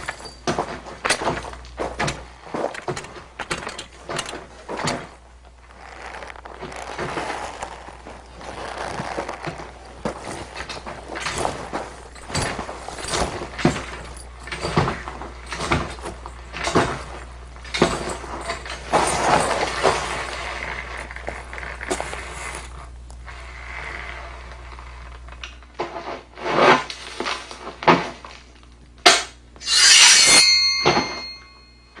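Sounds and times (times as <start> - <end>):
sharp knocks and thuds: 0.0 - 5.2
loud crash with glassy ringing: 29.6 - 32.0.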